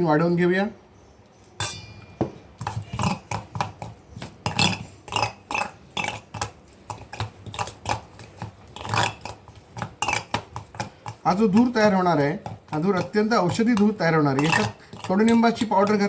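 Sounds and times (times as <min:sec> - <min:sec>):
spoon scraping and clinking pan: 0:01.6 - 0:03.4.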